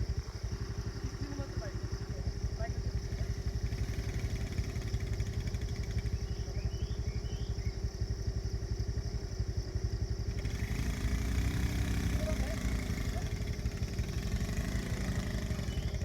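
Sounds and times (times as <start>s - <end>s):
small motorbike engine running: 0.0s - 16.0s.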